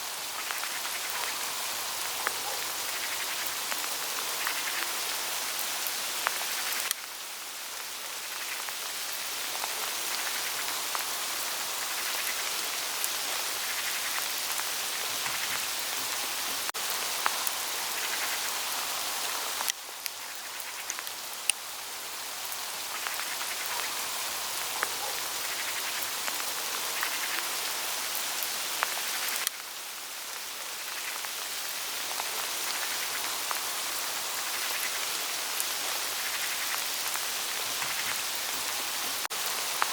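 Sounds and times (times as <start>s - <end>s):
hail pattering on dry leaves: 0.0s - 39.9s.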